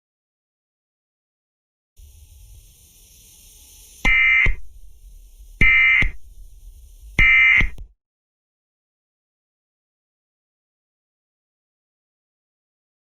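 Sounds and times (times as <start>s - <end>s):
faint static hiss: 2.0s - 7.9s
harsh buzzing digital bursts: 2.0s - 7.9s.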